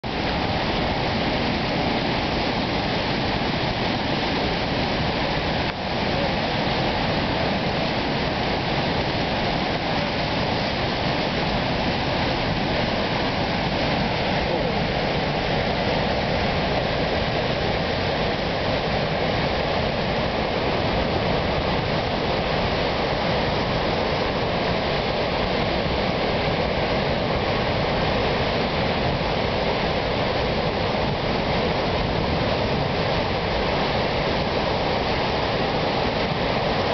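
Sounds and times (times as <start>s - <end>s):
river rushing: 0.0s - 36.9s.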